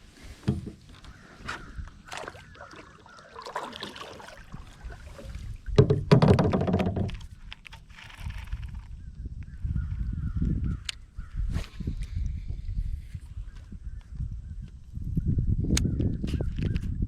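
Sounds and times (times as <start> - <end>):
water splashing: 1.6 - 7.0
knocks on plastic kayak: 5.8 - 7.2.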